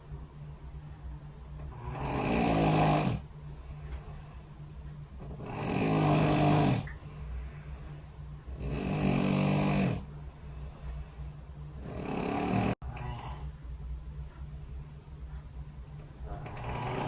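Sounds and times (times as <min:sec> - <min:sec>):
steady low hum: 0:00.0 - 0:17.0
person snoring: 0:01.7 - 0:03.2, 0:05.2 - 0:06.9, 0:08.5 - 0:10.1, 0:11.8 - 0:13.4, 0:16.4 - 0:17.0.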